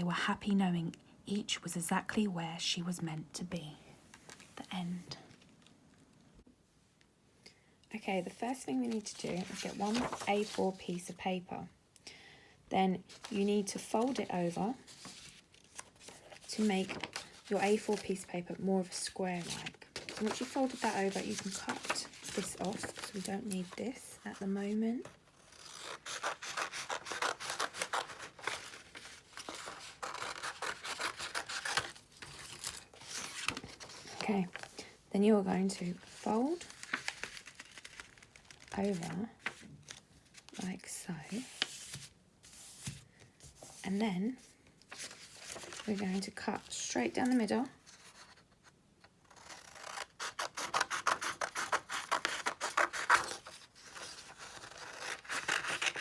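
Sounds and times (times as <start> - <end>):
paper rustling: 8.8 - 11.0, 13.1 - 18.4, 19.0 - 24.0, 25.0 - 34.8, 36.0 - 40.6, 41.4 - 48.6
scissors snipping paper: 49.3 - 56.0.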